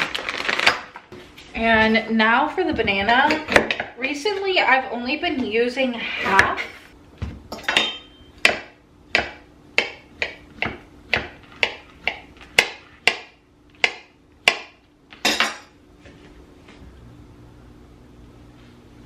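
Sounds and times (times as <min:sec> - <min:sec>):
knife chopping on cutting board: 0:08.4 - 0:14.8.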